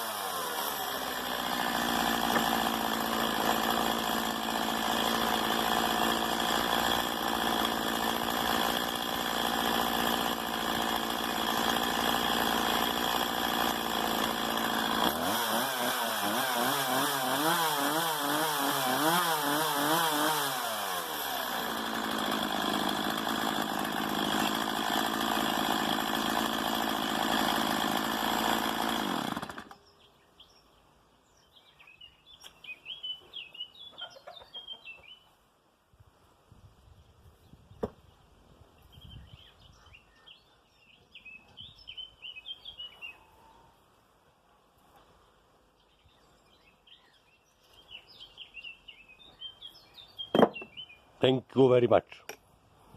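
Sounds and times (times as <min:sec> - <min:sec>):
chainsaw idling and revving: 0:00.0 - 0:29.9
birds chirping: 0:29.8 - 0:35.4, 0:37.4 - 0:43.7, 0:45.8 - 0:51.4.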